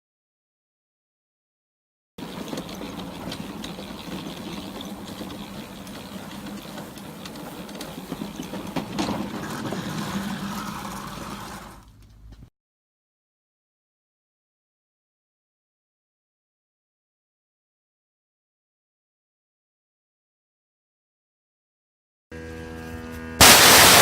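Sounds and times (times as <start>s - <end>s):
machine humming and rattling: 2.2s - 9.5s, 22.4s - 24.0s.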